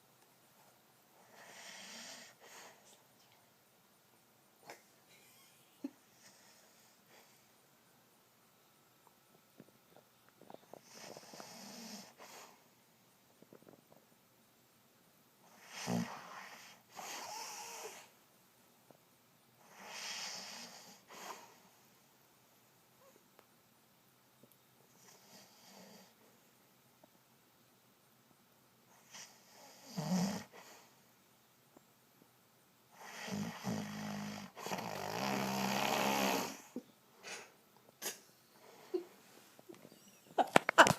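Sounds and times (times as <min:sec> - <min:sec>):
man snoring: 0:29.8 - 0:30.5, 0:33.0 - 0:36.7.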